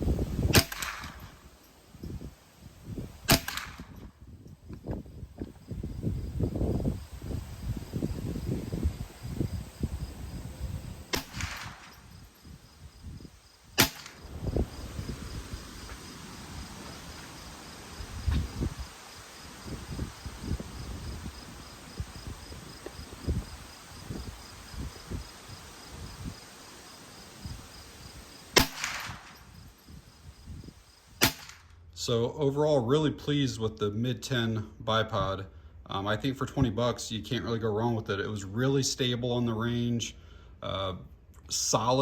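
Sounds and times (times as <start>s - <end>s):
wind buffeting microphone: 0.0s - 19.0s, 19.6s - 26.4s, 28.9s - 30.8s
rifle shots: 0.5s - 1.4s, 3.3s - 4.0s, 11.1s - 12.1s, 13.8s - 14.2s, 28.6s - 29.5s, 31.2s - 31.7s.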